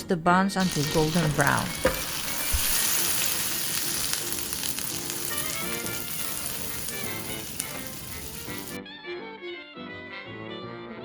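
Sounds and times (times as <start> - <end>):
butter sizzling in a frying pan: 0.6 - 8.8.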